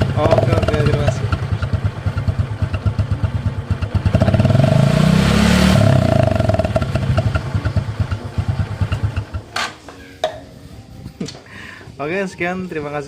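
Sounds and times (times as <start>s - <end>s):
motorcycle engine idling and revving: 0.0s - 9.9s.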